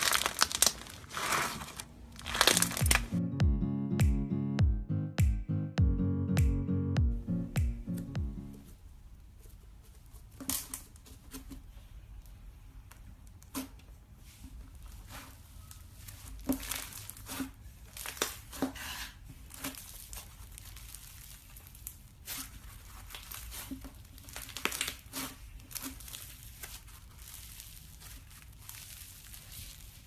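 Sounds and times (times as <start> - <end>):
slime crackling and popping: 0.0 - 3.2, 16.2 - 18.6, 19.5 - 30.0.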